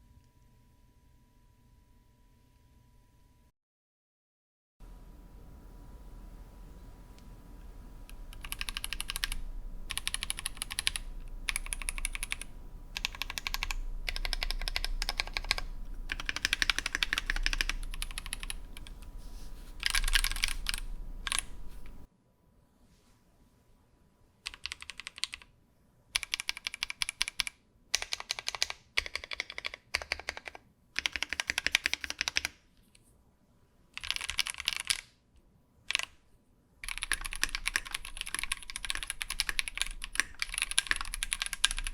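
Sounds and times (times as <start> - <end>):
typing on a mechanical keyboard: 8.1 - 19.1, 19.8 - 22.0, 24.4 - 25.5, 26.2 - 32.6, 34.0 - 35.2, 35.9 - 36.2, 36.8 - 41.9.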